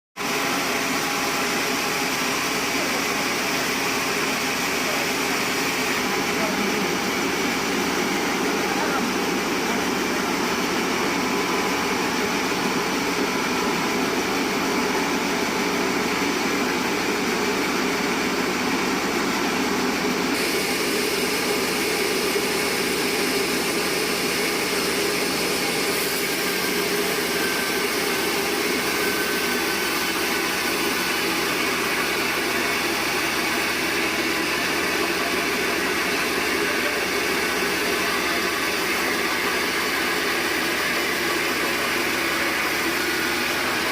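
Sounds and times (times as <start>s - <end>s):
band saw cutting log: 20.2s - 43.9s.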